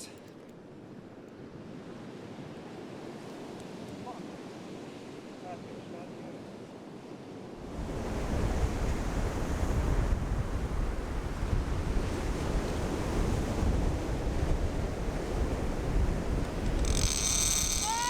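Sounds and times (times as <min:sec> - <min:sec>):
wind rumbling on microphone: 0:07.7 - 0:18.0.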